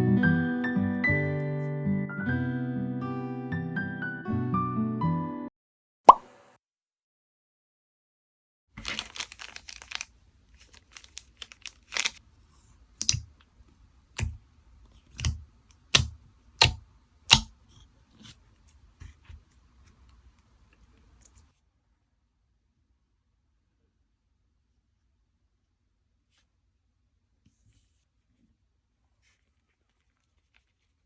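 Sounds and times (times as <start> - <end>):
packaging crinkling and tearing: 8.8 - 12.2.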